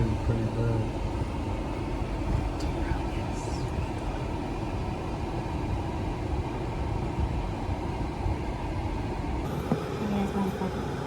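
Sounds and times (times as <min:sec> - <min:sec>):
car driving rumble: 0:00.0 - 0:08.5.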